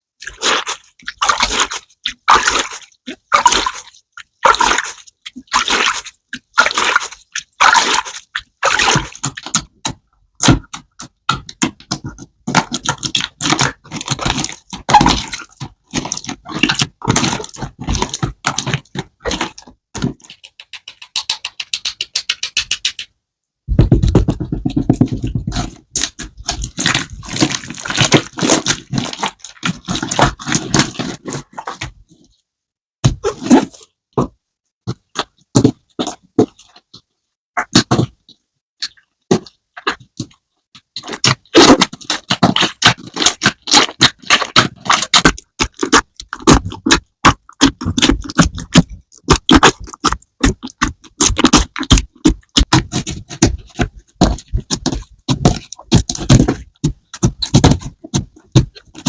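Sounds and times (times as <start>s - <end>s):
hands squishing slime: 0.1s - 23.1s, 23.7s - 32.4s, 37.6s - 59.0s
slime crackling and popping: 41.0s - 59.0s.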